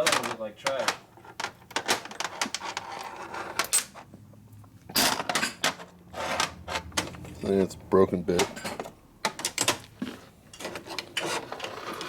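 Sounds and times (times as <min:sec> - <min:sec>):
metal parts clinking and clattering: 0:04.9 - 0:07.5, 0:08.4 - 0:09.8.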